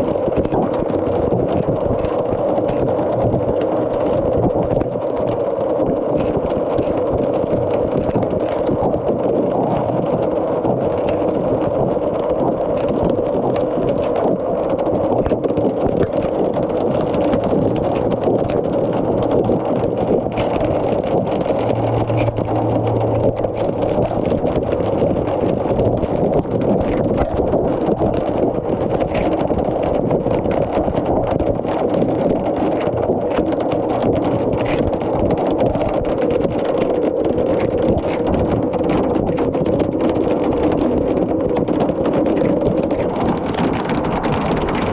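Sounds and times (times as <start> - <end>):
hailstones pelting down: 0.0 - 44.9
faint low hum: 19.0 - 26.8.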